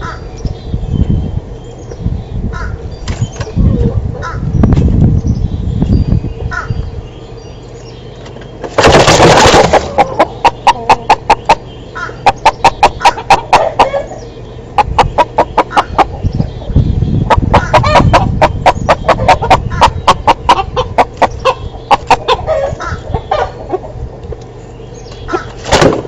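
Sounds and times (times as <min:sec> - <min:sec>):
chickens clucking: 0:01.8 - 0:05.0, 0:06.4 - 0:25.9
loud burst of noise: 0:08.7 - 0:10.0.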